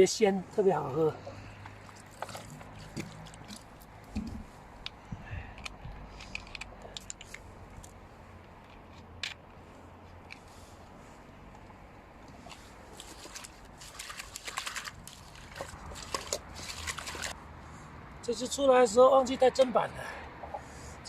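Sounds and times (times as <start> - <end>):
crackly rustling: 1.4 - 17.4.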